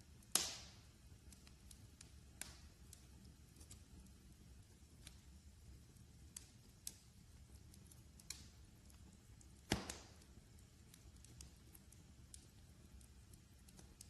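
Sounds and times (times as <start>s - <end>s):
wood fire crackling: 0.0s - 14.0s
sharp pops: 0.3s - 0.7s, 9.6s - 10.2s.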